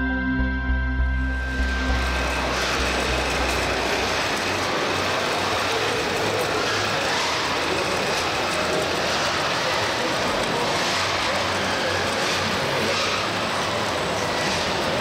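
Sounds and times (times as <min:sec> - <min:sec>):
background music: 0:00.0 - 0:04.6
model trucks rumbling and clattering: 0:01.5 - 0:15.0.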